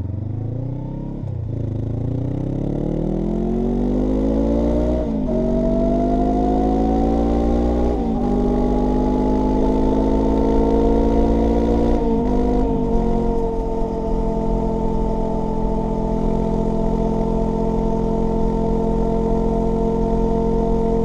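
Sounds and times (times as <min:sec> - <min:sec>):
motorcycle engine accelerating: 0:00.0 - 0:21.0.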